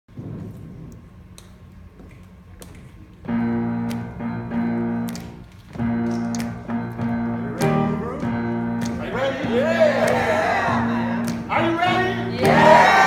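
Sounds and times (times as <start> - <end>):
keyboard playing held chords: 3.3 - 13.0.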